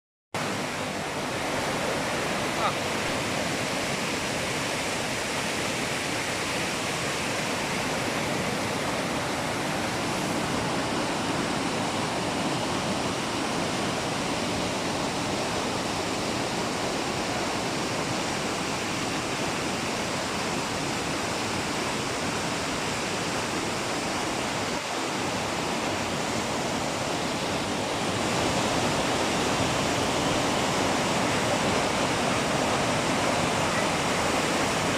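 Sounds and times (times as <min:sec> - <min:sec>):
river water rushing: 0:00.4 - 0:34.9.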